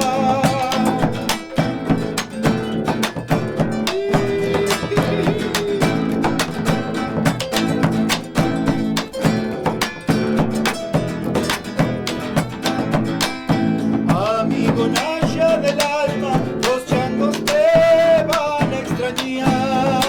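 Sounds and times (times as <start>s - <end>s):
strummed acoustic guitar: 0.0s - 20.0s
held sung note: 3.9s - 6.4s.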